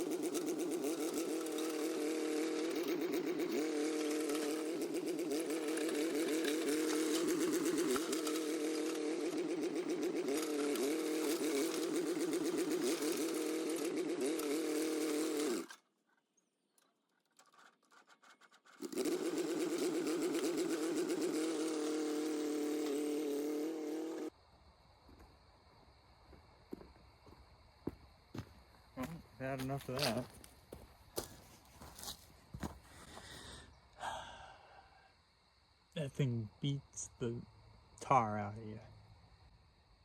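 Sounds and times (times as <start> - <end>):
small engine running fast: 0.0 - 15.9, 17.4 - 24.4.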